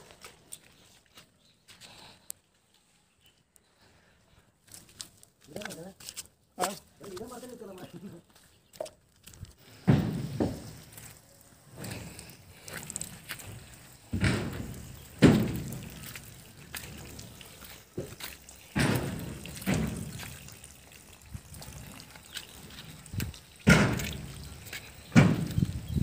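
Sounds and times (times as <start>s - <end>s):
wet concrete thuds and slosh: 8.7s - 11.2s, 11.8s - 26.0s.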